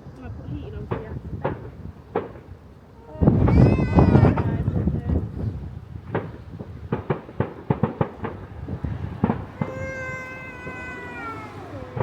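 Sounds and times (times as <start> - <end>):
fireworks cracking and banging: 6.0 - 12.0
long falling wail: 9.6 - 12.0.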